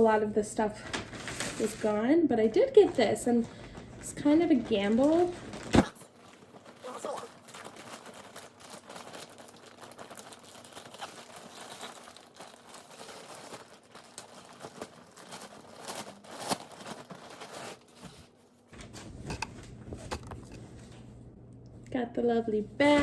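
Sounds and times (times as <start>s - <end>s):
packaging crinkling and tearing: 2.8s - 18.2s
steady low hum: 18.1s - 23.0s.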